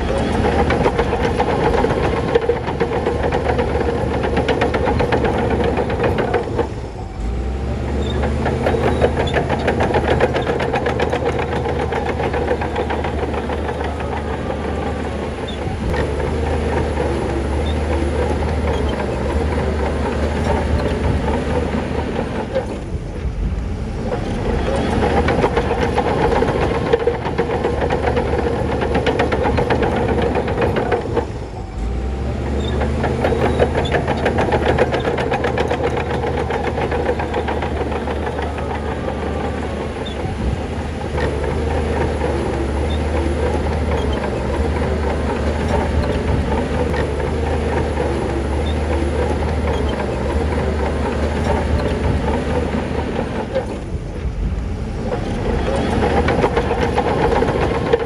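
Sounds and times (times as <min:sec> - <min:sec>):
bulldozer diesel engine running: 0:00.0 - 0:58.0
steel tracks clattering: 0:00.0 - 0:58.0.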